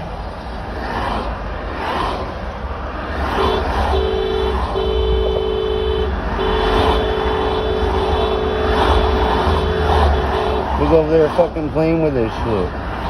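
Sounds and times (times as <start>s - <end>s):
vehicles rumbling: 0.0s - 13.0s
car horn blasts: 3.4s - 10.9s.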